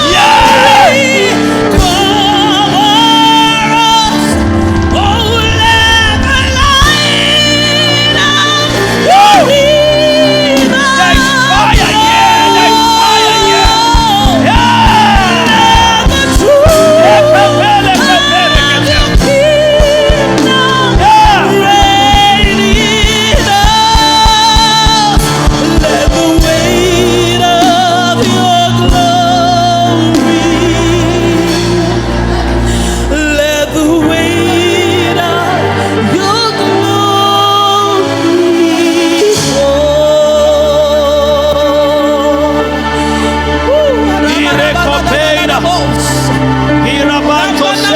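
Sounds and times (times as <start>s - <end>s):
voices singing gospel: 0.0s - 4.0s, 5.1s - 47.9s
bass: 0.0s - 47.9s
steady drum beat: 8.8s - 32.6s.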